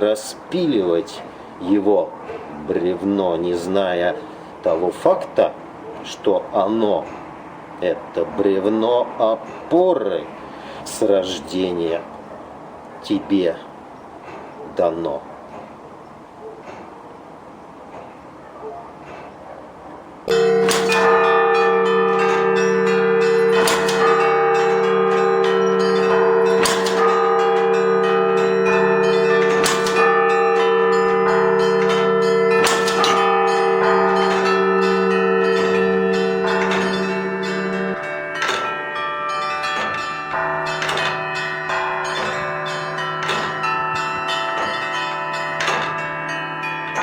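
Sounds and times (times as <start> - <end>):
large bells humming: 20.2 - 47.0
heavy bell stroke: 20.3 - 47.0.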